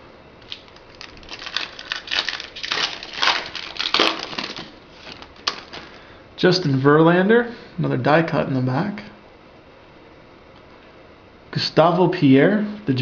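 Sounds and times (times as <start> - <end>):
foil wrapper crinkling: 0.4 - 6.1.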